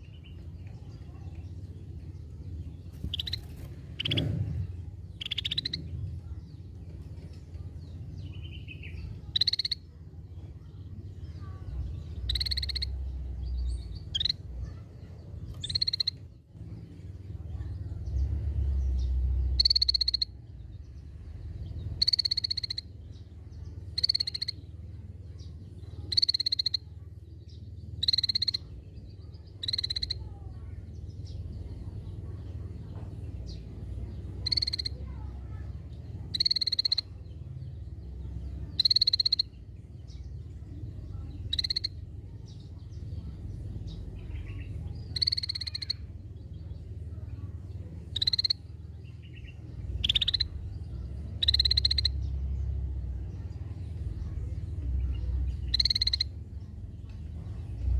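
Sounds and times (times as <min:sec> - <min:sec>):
low background rumble: 0:00.0 - 0:57.9
bird harsh call notes: 0:03.1 - 0:04.3, 0:05.1 - 0:05.8, 0:50.0 - 0:50.5, 0:51.4 - 0:52.3.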